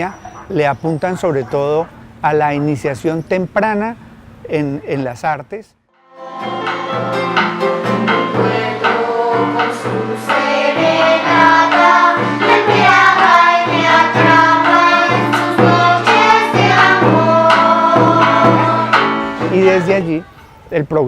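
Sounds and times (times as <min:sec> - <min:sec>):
choir singing: 0:06.0 - 0:20.0
instrumental accompaniment: 0:06.0 - 0:20.3.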